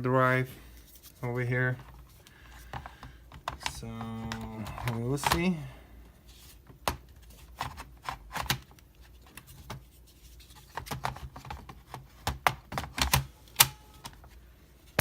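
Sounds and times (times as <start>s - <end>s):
laptop parts clicking and tapping: 2.6s - 5.6s, 10.7s - 14.3s.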